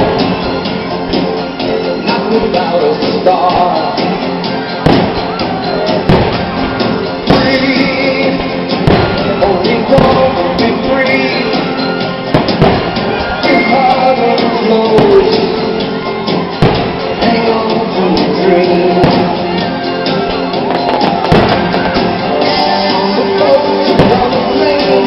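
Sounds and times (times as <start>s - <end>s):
crowd shouting: 0.0s - 25.0s
loud music with singing: 0.0s - 25.0s
fireworks bangs: 4.7s - 14.1s, 16.4s - 17.7s, 18.4s - 25.0s.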